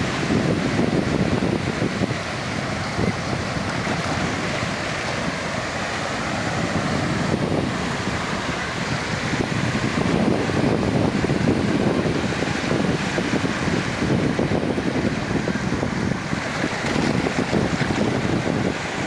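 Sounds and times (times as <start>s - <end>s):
waves washing onto beach: 0.0s - 19.0s.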